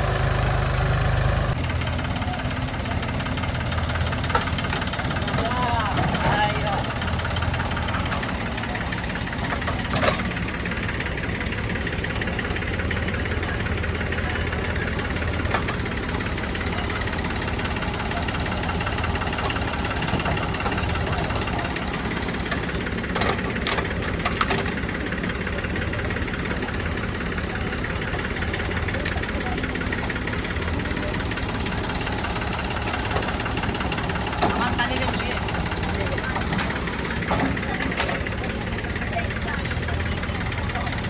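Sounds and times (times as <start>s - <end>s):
diesel engines running: 0.0s - 41.0s.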